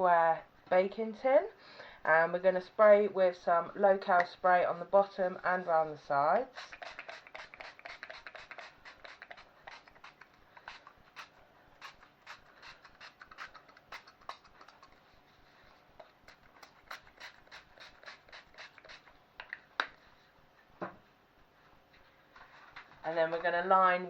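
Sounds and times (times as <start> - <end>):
oil spray spritzing into metal tin: 6.6 - 13.6, 16.9 - 19.1.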